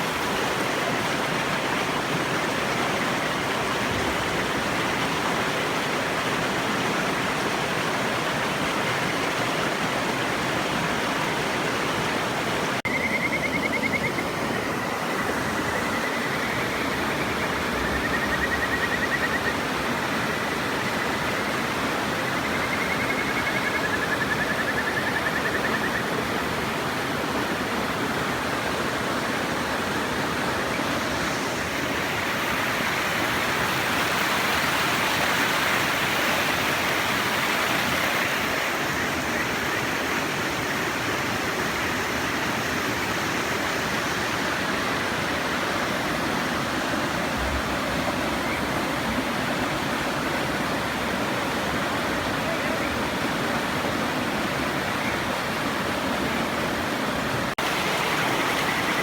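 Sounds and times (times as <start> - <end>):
river water rushing: 0.0 - 59.0
frogs trilled whistling calls: 12.9 - 26.2, 58.0 - 59.0.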